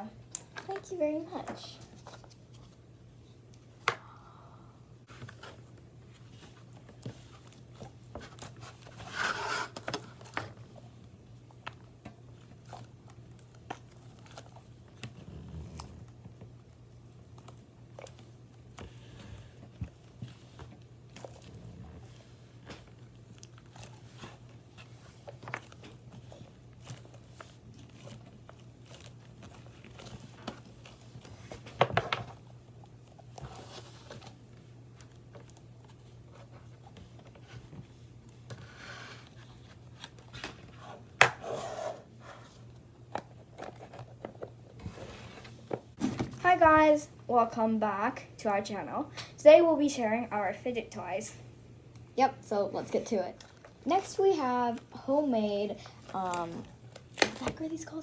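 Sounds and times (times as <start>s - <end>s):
steady low hum: 0.0s - 58.0s
crinkling bursts: 5.1s - 41.2s.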